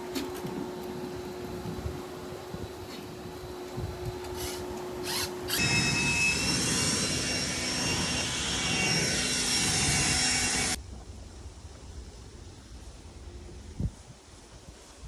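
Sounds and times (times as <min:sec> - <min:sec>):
power tool whining: 0:04.3 - 0:10.8.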